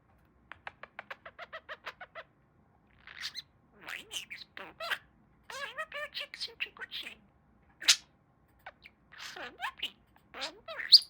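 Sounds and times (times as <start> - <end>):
budgerigar chirping: 3.1 - 7.2, 7.8 - 8.0, 9.2 - 11.0
budgerigar warbling chatter: 7.8 - 8.0, 9.2 - 11.0.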